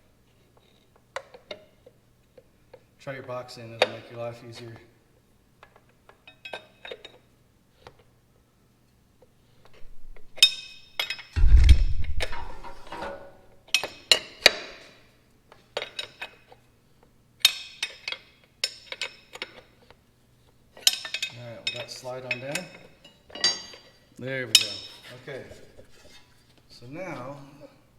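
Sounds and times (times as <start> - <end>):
heavy metal clunk: 11.4 - 13.4
metal tools clinking: 20.8 - 24.0.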